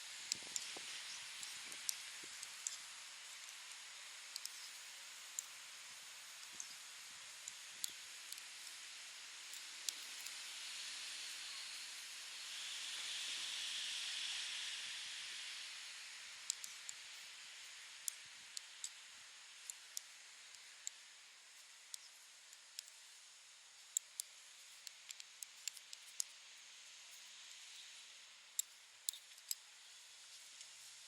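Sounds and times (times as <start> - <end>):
outdoor hiss: 0.0 - 31.0
metal knitting needles clicking: 21.6 - 23.1, 23.9 - 26.4, 28.6 - 29.6.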